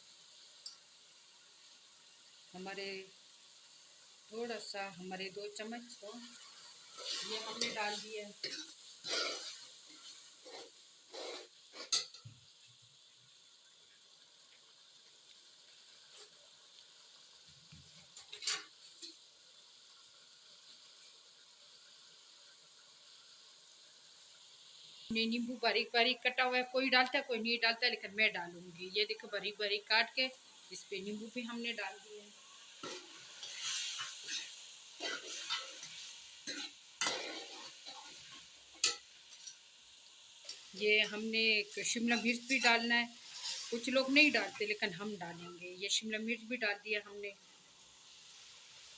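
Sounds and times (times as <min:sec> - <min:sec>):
food sizzling in a pan: 0:00.0 - 0:48.9
spoon scraping in a pan: 0:06.1 - 0:12.7, 0:15.8 - 0:16.5, 0:17.8 - 0:19.2, 0:31.9 - 0:39.7, 0:40.4 - 0:45.0.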